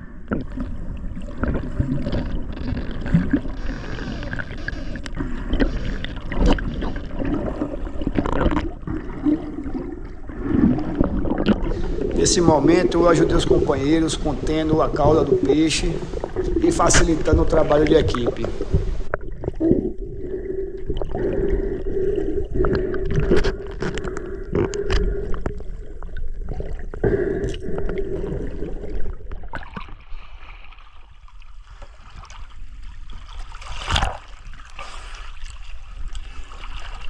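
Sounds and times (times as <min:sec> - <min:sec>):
water sloshing and gurgling: 0:00.0 - 0:37.0
steady hum: 0:11.6 - 0:19.1.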